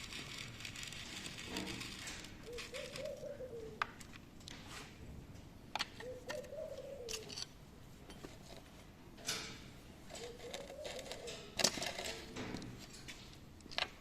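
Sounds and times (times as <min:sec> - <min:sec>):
dove cooing: 0:01.8 - 0:04.0, 0:05.9 - 0:07.4, 0:10.1 - 0:12.3.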